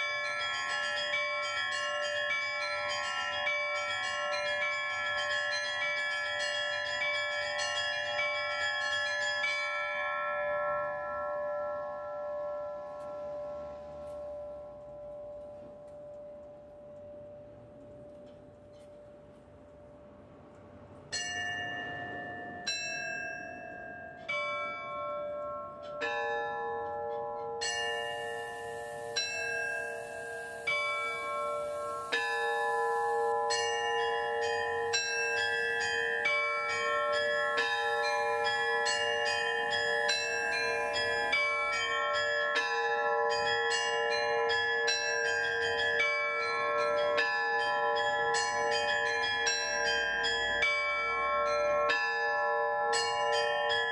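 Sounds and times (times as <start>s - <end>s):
bells ringing: 0.0s - 53.9s.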